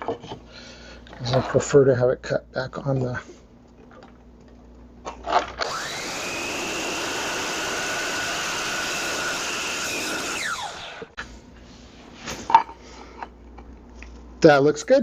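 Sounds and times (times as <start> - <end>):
miter saw whining: 5.6 - 11.2.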